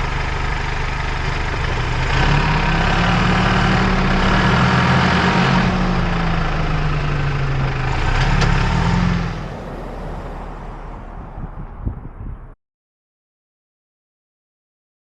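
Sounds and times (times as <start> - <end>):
engine running with hum and hiss: 0.0 - 11.4.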